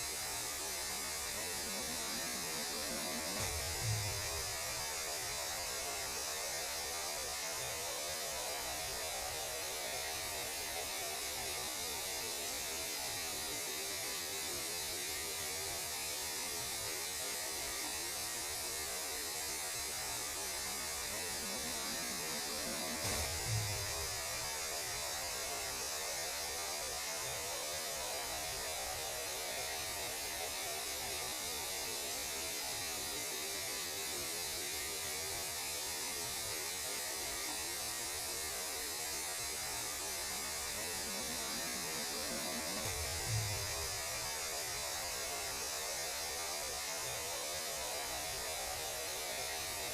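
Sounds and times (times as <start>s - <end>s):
radio static hiss and hum: 0.0s - 11.8s, 19.9s - 35.1s, 39.4s - 49.9s.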